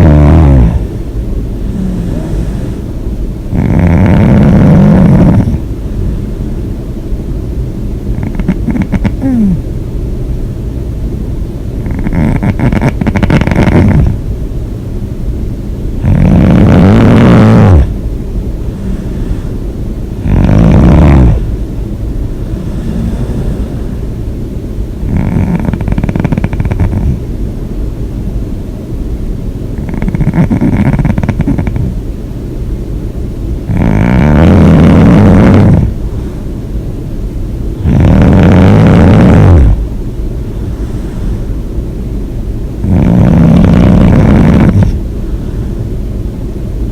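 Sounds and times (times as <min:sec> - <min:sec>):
person snoring loudly: 0:00.0 - 0:00.9, 0:01.7 - 0:02.8, 0:03.5 - 0:05.7, 0:08.1 - 0:09.6, 0:11.8 - 0:14.2, 0:16.0 - 0:18.0, 0:20.2 - 0:21.5, 0:22.4 - 0:23.9, 0:25.0 - 0:27.2, 0:29.8 - 0:32.0, 0:33.7 - 0:36.0, 0:37.8 - 0:39.8, 0:42.8 - 0:45.0
quiet breathing: 0:00.0 - 0:06.8, 0:18.6 - 0:24.4, 0:25.0 - 0:27.3, 0:33.6 - 0:46.9.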